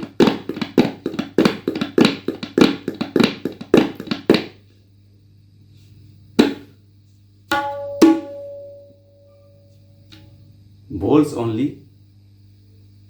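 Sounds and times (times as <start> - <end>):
tabla strokes: 0.0 - 4.6, 7.5 - 8.9.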